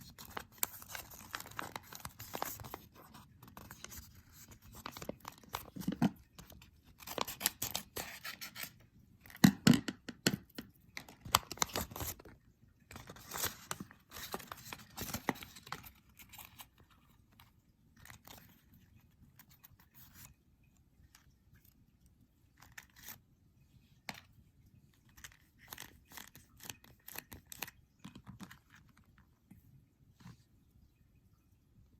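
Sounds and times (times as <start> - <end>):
plastic packet crinkling: 11.0 - 12.4.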